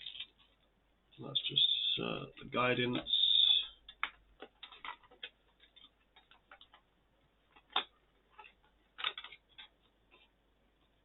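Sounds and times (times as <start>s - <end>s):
cards clicking and tapping: 2.9s - 6.9s, 7.5s - 10.3s.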